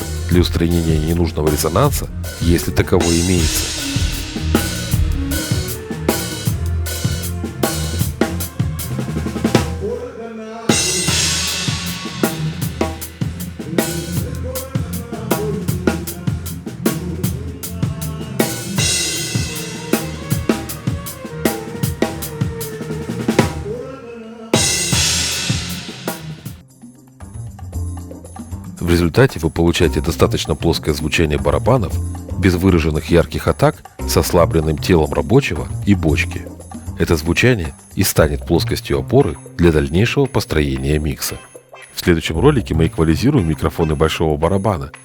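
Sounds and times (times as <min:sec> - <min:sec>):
low bass line: 0:00.0 - 0:09.6, 0:27.3 - 0:37.4
drum kit playing a groove: 0:00.0 - 0:10.0, 0:10.7 - 0:23.7, 0:24.6 - 0:26.7, 0:27.8 - 0:41.0.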